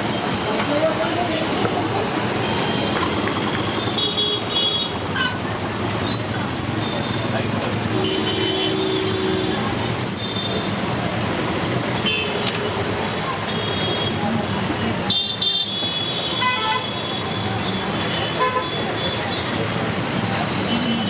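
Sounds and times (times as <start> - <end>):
road traffic din: 0.0 - 21.0
vehicle horn toots: 7.9 - 9.6, 15.1 - 17.0.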